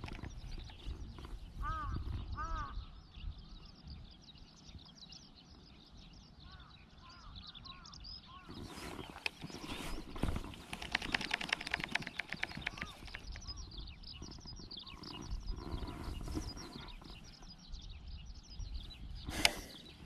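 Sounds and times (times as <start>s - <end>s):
small birds chirping: 0.0s - 20.0s
rapid clicks: 9.0s - 13.6s
sharp click: 19.3s - 19.8s.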